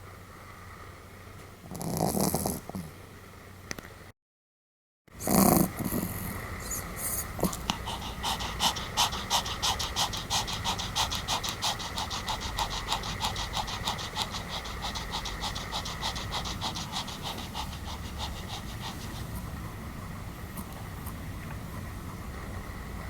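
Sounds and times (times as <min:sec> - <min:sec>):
dog snoring: 0:01.7 - 0:02.9, 0:05.2 - 0:19.5
dog panting: 0:06.7 - 0:19.7.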